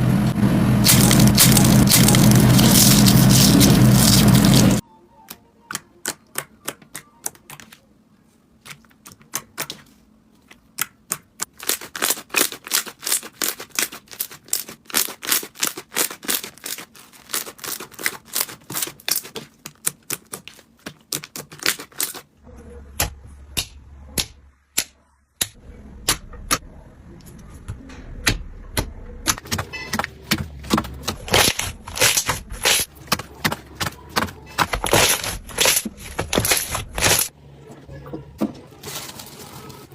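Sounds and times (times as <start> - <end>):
low hum: 0.0 - 4.8.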